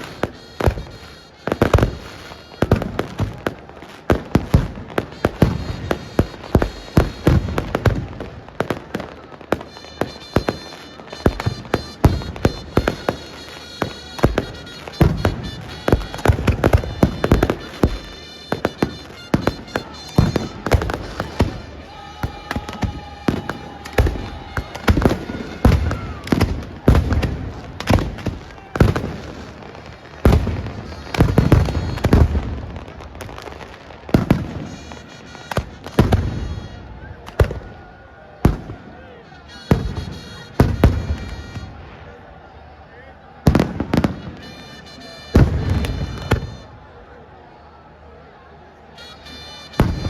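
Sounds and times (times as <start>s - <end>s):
fireworks bangs and crackles: 0.0s - 42.4s, 43.3s - 46.9s, 49.5s - 50.0s.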